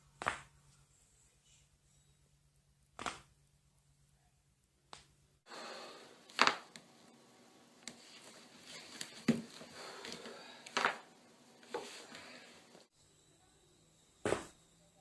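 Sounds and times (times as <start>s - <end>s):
steady room hiss: 0.0s - 15.0s
spinal joints cracking: 6.3s - 6.8s.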